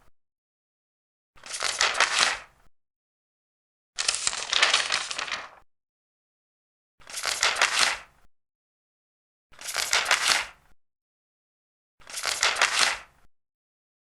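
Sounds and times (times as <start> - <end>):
paper pages turning: 1.4 - 2.5, 4.0 - 5.6, 7.0 - 8.1, 9.6 - 10.6, 12.0 - 13.1.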